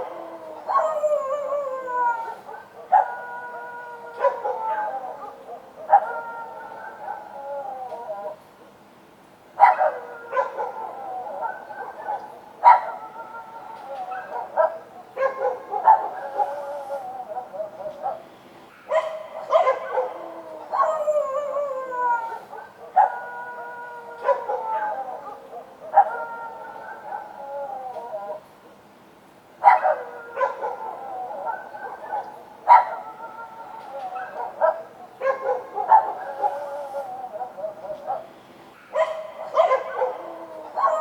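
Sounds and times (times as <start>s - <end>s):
dogs howling: 0.0s - 8.4s, 9.6s - 28.5s, 29.6s - 41.0s
dogs barking: 2.4s - 7.4s, 9.6s - 13.2s, 13.9s - 21.5s, 22.4s - 27.4s, 29.6s - 41.0s.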